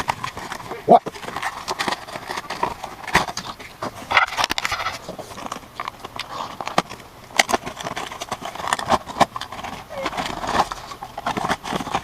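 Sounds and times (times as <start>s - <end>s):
rustling: 0.0s - 12.0s.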